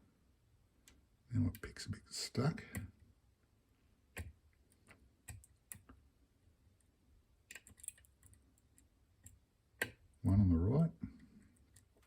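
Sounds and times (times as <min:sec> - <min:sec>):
lock pick clicking on pins: 0:07.5 - 0:08.4.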